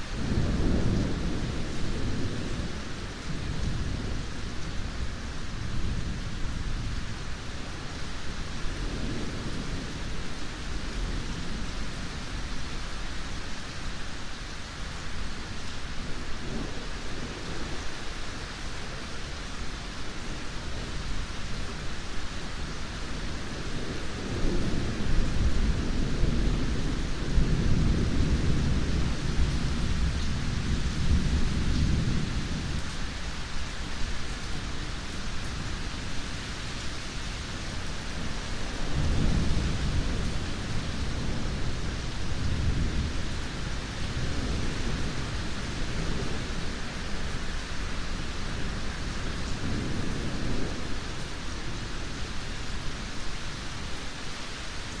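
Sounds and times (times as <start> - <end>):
steady rain: 0.0 - 55.0
rolling thunder rumbles: 38.2 - 47.4.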